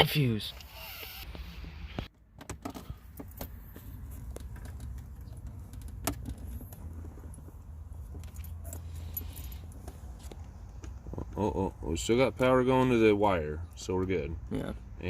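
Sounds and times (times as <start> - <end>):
small clicks and metallic rattles: 2.4 - 11.4.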